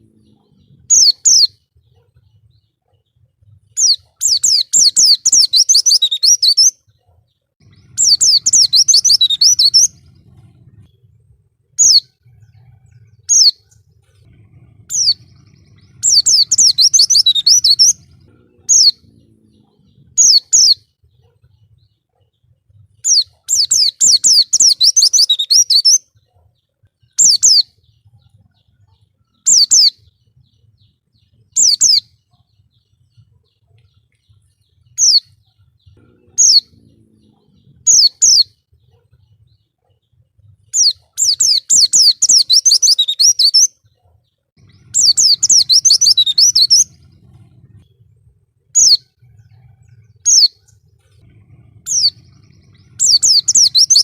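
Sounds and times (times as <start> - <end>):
bird twittering: 0.0 - 1.6, 3.8 - 6.8, 7.6 - 20.9, 23.0 - 26.0, 27.2 - 27.7, 28.4 - 30.1, 31.6 - 32.2, 34.9 - 38.6, 40.7 - 43.7, 44.6 - 48.2, 48.8 - 54.0
bird chirped phrases: 0.0 - 22.3, 22.9 - 26.4, 27.1 - 40.0, 40.7 - 43.7, 44.6 - 48.2, 48.8 - 54.0.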